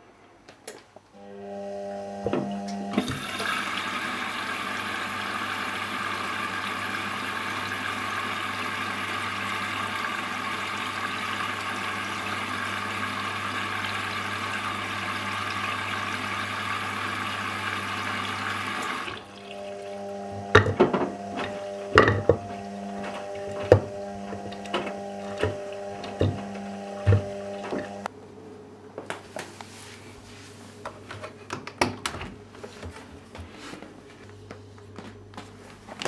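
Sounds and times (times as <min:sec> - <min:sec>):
washing machine motor hum: 0:01.2 - 0:28.1
washing machine water rushing: 0:01.4 - 0:28.1.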